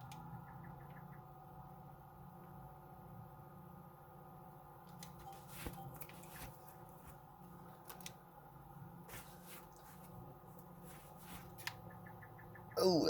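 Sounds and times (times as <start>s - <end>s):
tractor engine drone from cab: 0.0s - 13.0s
scratchy rustles: 5.2s - 7.2s, 9.1s - 11.7s.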